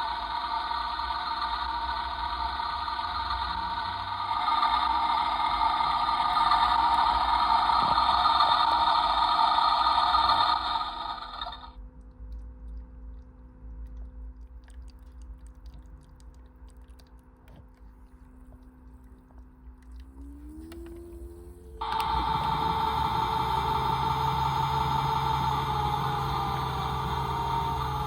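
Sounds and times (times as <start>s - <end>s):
toy drum motor whirring: 0.0s - 11.7s, 21.8s - 28.0s
faint steady hum: 0.0s - 28.0s.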